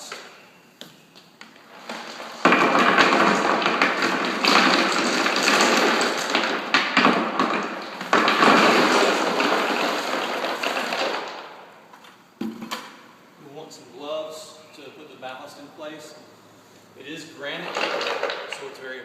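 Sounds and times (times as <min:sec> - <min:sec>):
stones poured into tray: 0:01.7 - 0:11.5, 0:17.5 - 0:18.8.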